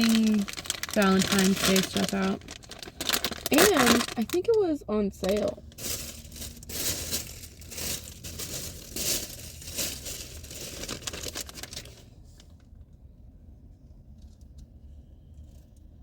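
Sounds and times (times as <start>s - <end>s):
plastic bag crinkling and tearing: 0.0s - 12.1s.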